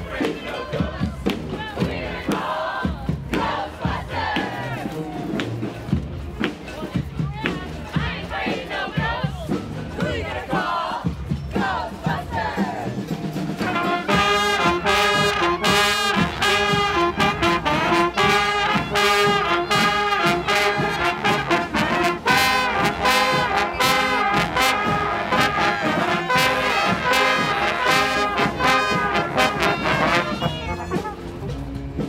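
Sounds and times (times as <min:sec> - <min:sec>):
brass band playing: 0:12.5 - 0:32.0.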